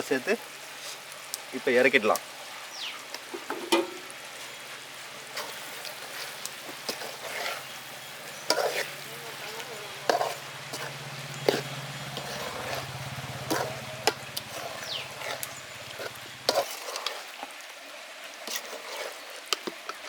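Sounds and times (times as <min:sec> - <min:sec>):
chicken sizzling in a pan: 0:00.0 - 0:20.0
metal ladle scraping pan: 0:03.3 - 0:04.5, 0:05.3 - 0:17.5, 0:18.4 - 0:20.0
ladle clinking against pan: 0:03.5 - 0:04.1.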